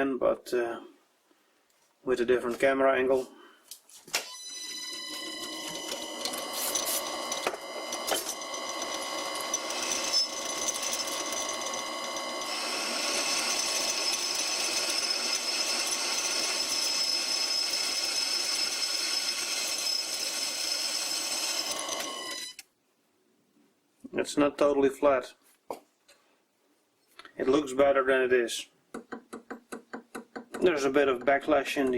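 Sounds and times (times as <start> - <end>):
lathe motor whine: 4.4 - 22.6
cutting tool scraping metal: 5.8 - 22.6.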